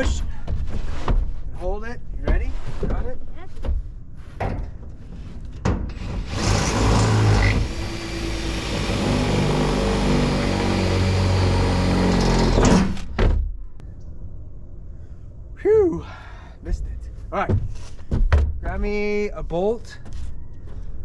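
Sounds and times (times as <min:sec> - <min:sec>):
power drill running under load: 0:06.3 - 0:12.6
knocks: 0:17.4 - 0:18.8.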